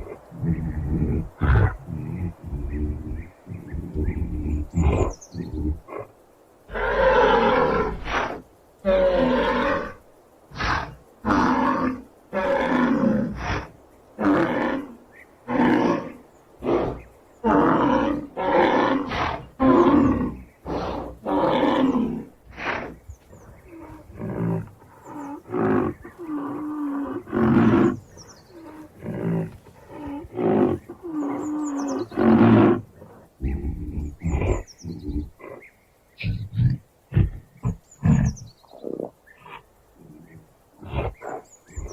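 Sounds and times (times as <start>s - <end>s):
rhinoceros harsh calls: 6.7s - 35.6s
rhinoceros soft pitched calls: 16.6s - 35.6s.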